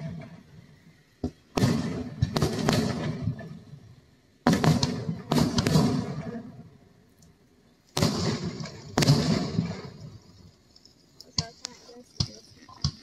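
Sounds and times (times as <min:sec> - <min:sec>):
fireworks bangs with crackling echo: 0:00.0 - 0:06.8, 0:07.9 - 0:10.5.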